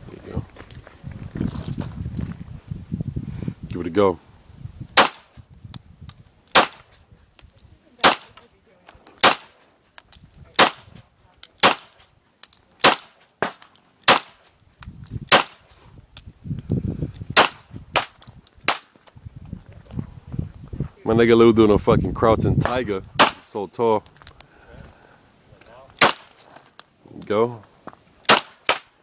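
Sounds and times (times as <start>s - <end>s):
single gunshots: 5.0s - 5.3s, 6.5s - 6.9s, 8.0s - 8.4s, 9.2s - 9.6s, 10.6s - 10.9s, 11.6s - 12.0s, 12.8s - 14.4s, 15.3s - 15.6s, 17.4s - 18.1s, 23.2s - 23.4s, 26.0s - 26.4s, 28.3s - 28.9s.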